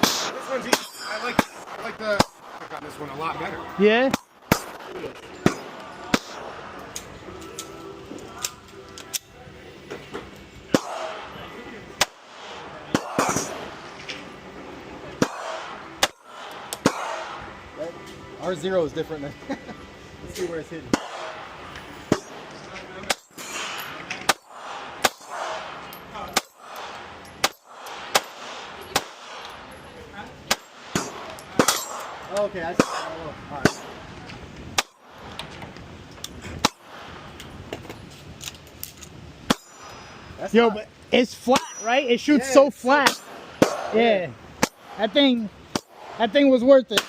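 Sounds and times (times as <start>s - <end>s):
pistol shots: 4.1s - 6.8s, 10.7s - 11.4s, 12.0s - 14.0s, 15.2s - 17.6s, 20.9s - 29.7s, 30.4s - 34.0s, 43.0s - 44.0s.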